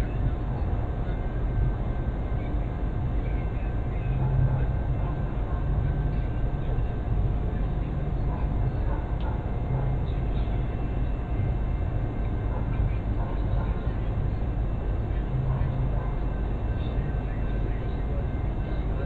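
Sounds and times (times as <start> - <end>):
faint constant hum: 0.0 - 19.0.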